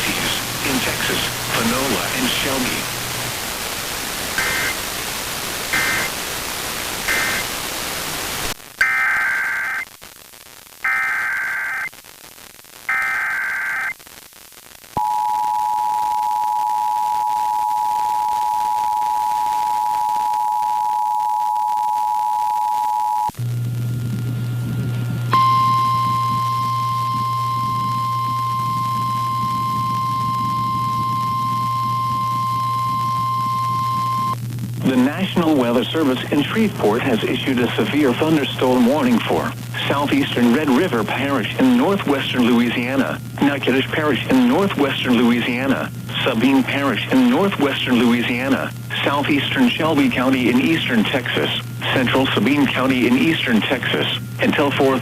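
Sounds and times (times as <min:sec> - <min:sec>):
mains hum: 0:00.0 - 0:55.0
radio static: 0:00.0 - 0:55.0
electronic data bursts: 0:04.4 - 0:04.8, 0:05.6 - 0:06.2, 0:07.0 - 0:07.6, 0:08.8 - 0:09.9, 0:10.8 - 0:11.9, 0:12.9 - 0:14.0, 0:25.3 - 0:35.4
steady warning alarm tone: 0:07.1 - 0:07.4, 0:25.3 - 0:34.4
two-tone attention signal: 0:25.3 - 0:34.4.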